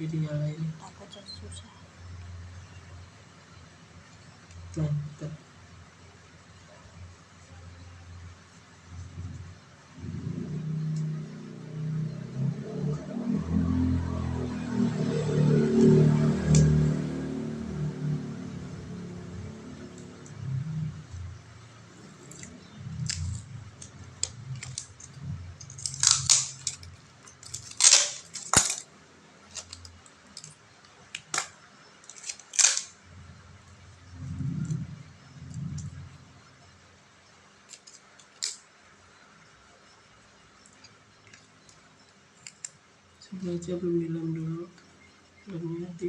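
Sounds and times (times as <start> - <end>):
phone parts clicking and scraping: 22.3 - 28.9, 31.2 - 33.0, 37.7 - 38.6.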